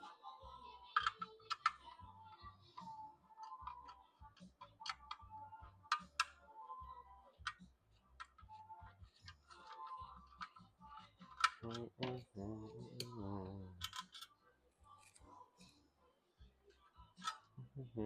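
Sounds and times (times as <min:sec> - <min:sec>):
faint background music: 0:00.0 - 0:18.0
clicks of small parts and tools: 0:01.0 - 0:02.0, 0:05.9 - 0:06.4, 0:08.2 - 0:12.3, 0:13.8 - 0:14.3, 0:17.2 - 0:17.5.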